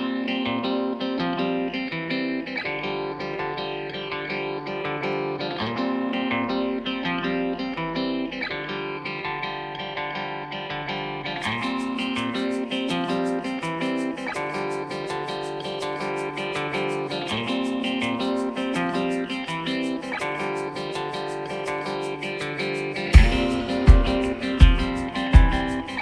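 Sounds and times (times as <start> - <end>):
guitar strumming and picking: 0.0 - 26.0.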